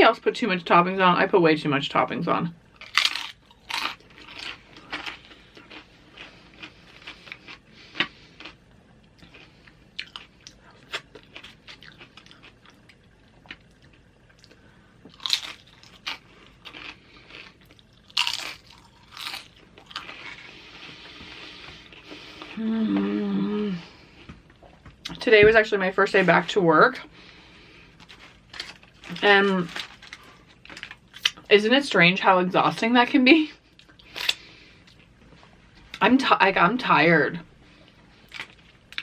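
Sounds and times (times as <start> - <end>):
chewing and crunching chips: 2.7 - 22.6, 27.0 - 31.5, 37.7 - 39.0.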